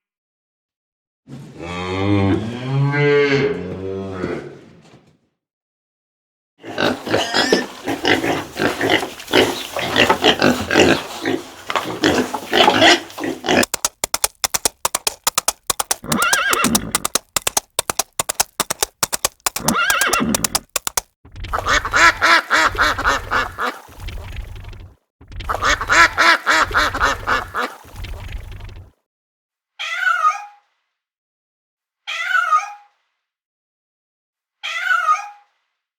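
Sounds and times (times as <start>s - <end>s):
fast clicking sounds: 13.5s - 21.1s.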